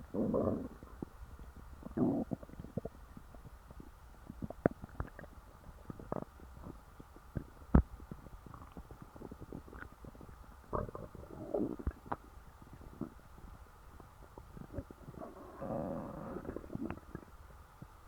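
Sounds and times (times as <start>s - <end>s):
stomach gurgling: 0.0s - 18.0s.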